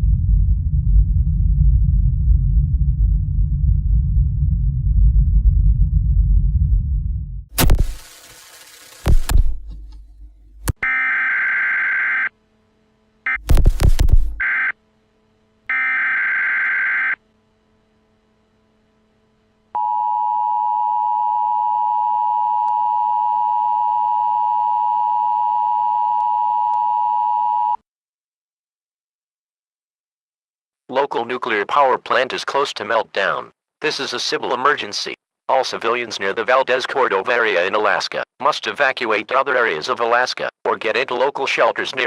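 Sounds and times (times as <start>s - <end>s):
loud crash: 7.6s - 10.7s.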